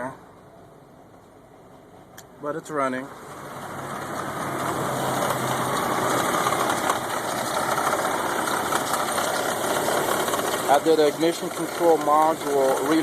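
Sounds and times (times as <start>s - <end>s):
car engine idling roughly: 3.6s - 13.0s.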